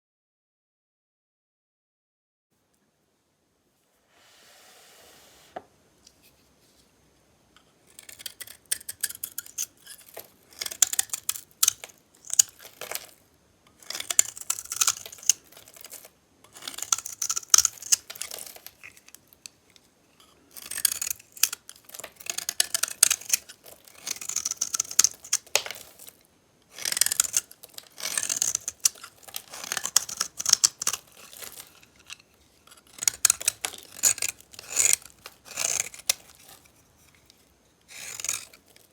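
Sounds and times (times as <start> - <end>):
blade scraping soap: 7.6 - 19.5, 20.2 - 38.9.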